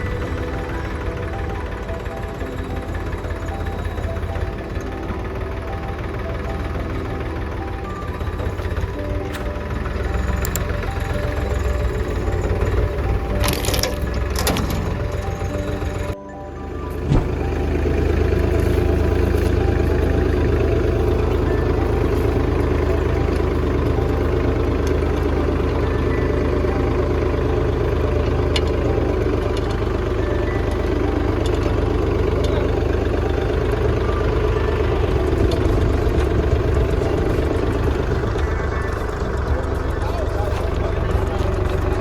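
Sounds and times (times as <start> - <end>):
tractor engine running: 0.0 - 42.0.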